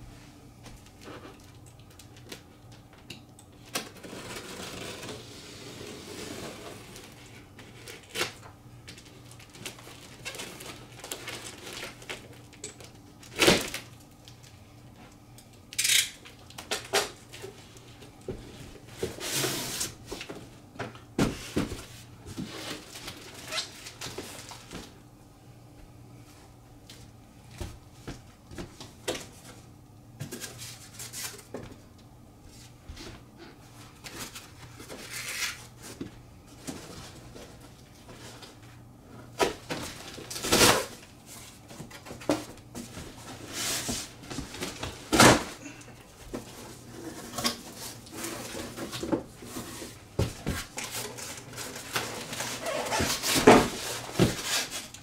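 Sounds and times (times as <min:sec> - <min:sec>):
cardboard rustling: 0:46.2 - 0:55.0
cardboard scrapes and knocks: 0:46.4 - 0:54.9.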